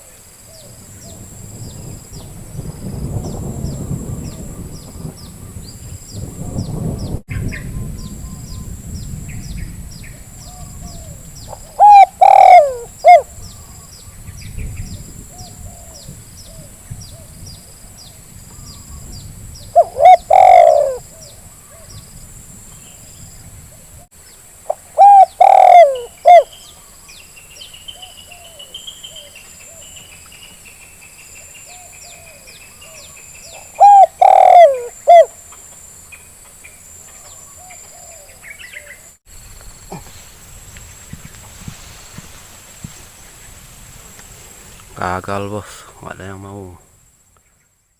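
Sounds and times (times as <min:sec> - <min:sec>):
dove cooing: 0:10.4 - 0:13.9, 0:19.7 - 0:22.0, 0:24.7 - 0:26.6, 0:31.7 - 0:35.4, 0:37.2 - 0:39.1.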